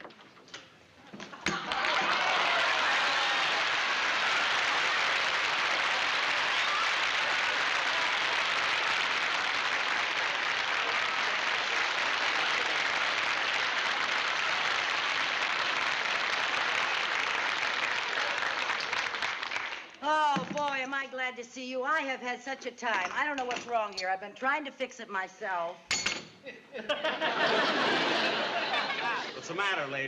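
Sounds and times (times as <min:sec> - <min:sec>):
audience applauding: 0:01.4 - 0:20.0.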